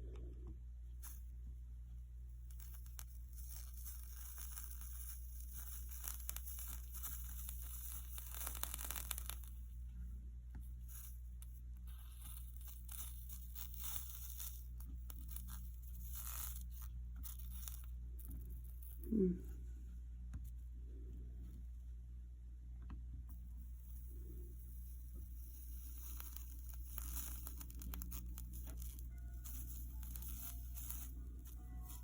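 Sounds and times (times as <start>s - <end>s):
low steady hum: 0.0s - 32.0s
flux sizzling and crackling: 2.4s - 9.7s, 10.7s - 19.1s, 23.8s - 32.0s.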